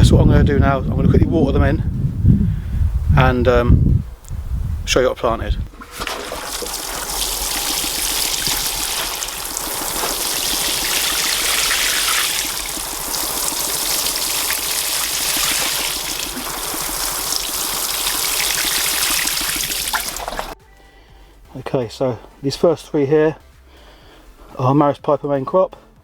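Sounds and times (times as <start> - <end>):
water pouring onto compost: 5.7 - 20.6.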